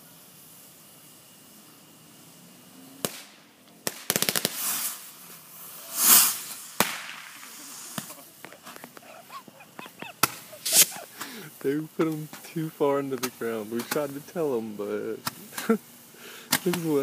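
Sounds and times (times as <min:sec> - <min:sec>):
firework rushing hiss: 0:00.0 - 0:17.0
crackling firework pops: 0:03.0 - 0:09.1, 0:09.9 - 0:14.3, 0:15.1 - 0:15.8, 0:16.5 - 0:17.0
firework bangs: 0:03.0 - 0:14.6, 0:16.4 - 0:17.0.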